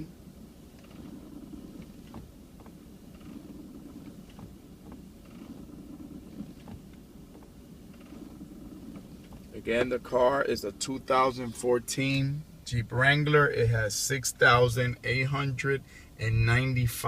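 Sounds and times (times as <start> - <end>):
clutch pedal creaking: 0.8 - 9.6.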